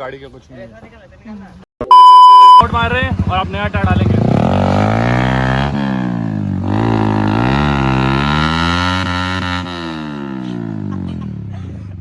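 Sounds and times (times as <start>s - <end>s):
motorcycle engine revving: 2.6s - 12.0s.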